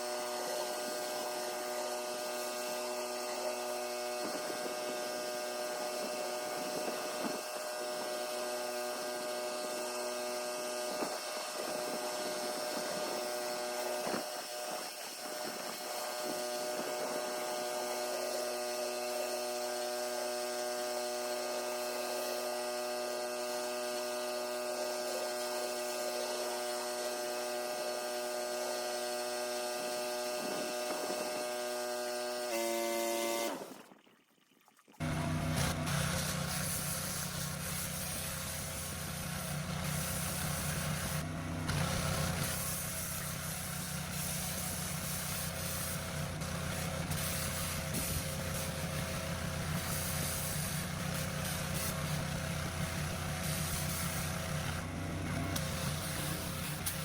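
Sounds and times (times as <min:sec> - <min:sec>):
pressure washer machine hum: 0:00.0 - 0:33.7, 0:35.0 - 0:57.0
hiss of water spray: 0:35.1 - 0:57.0.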